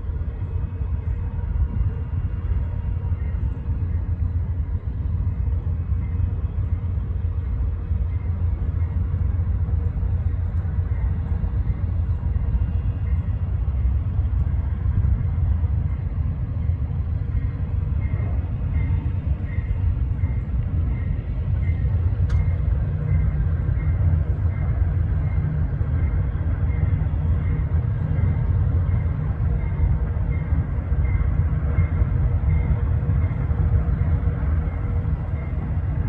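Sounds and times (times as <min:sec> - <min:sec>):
faint steady tones: 0:00.0 - 0:36.0
moving vehicle rumble: 0:00.0 - 0:36.0.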